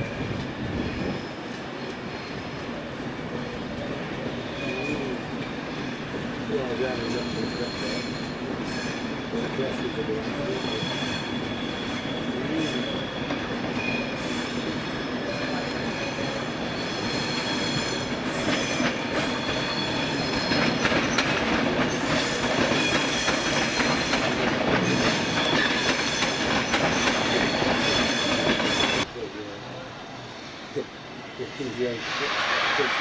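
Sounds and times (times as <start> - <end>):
train wheels squealing on rails: 0.0 - 33.0
train wheels clicking over rail joints: 4.7 - 29.1.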